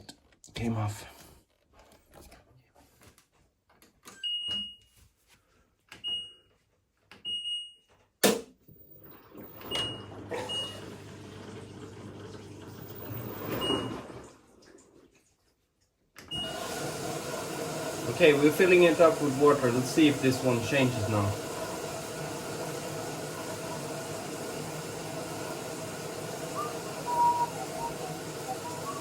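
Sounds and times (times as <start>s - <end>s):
washing machine rushing and humming: 8.7s - 15.1s, 16.3s - 29.0s.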